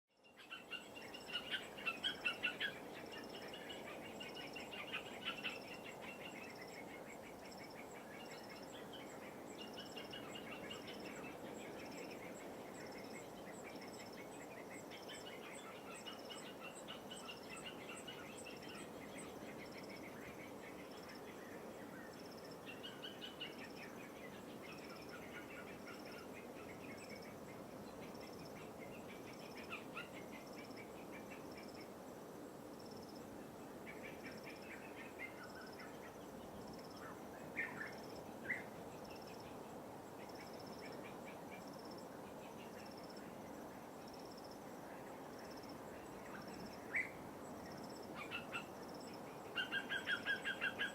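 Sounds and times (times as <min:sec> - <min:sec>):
birds calling in trills: 0:00.3 - 0:08.1, 0:48.1 - 0:50.9.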